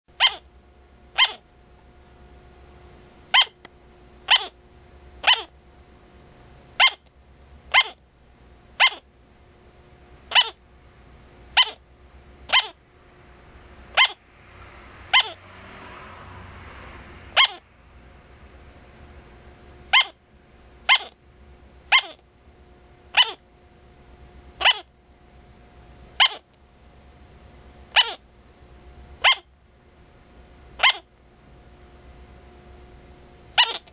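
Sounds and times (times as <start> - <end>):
dog barking: 0.2 - 0.4, 1.2 - 1.4, 3.3 - 3.6, 4.3 - 4.6, 5.2 - 5.5, 6.8 - 7.0, 7.7 - 8.0, 8.8 - 9.0, 10.3 - 10.6, 11.5 - 11.8, 12.5 - 12.8, 13.9 - 14.2, 15.1 - 15.4, 17.3 - 17.6, 19.9 - 20.2, 20.8 - 21.2, 21.9 - 22.2, 23.1 - 23.4, 24.6 - 24.9, 26.2 - 26.4, 27.9 - 28.2, 29.2 - 29.5, 30.8 - 31.1, 33.6 - 33.8.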